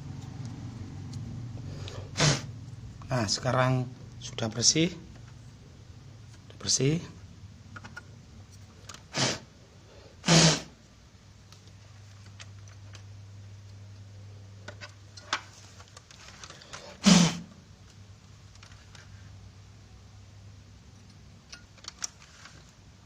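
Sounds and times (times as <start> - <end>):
puffs of breath blowing: 9.1 - 10.8, 16.6 - 17.5.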